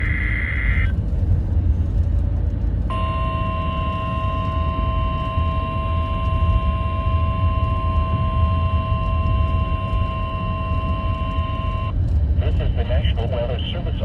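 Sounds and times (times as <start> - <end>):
steady alert tone: 0.0 - 0.9
warbling digital data burst: 0.0 - 0.9
radio static: 0.0 - 1.0, 2.9 - 14.0
loud low hum: 0.0 - 14.0.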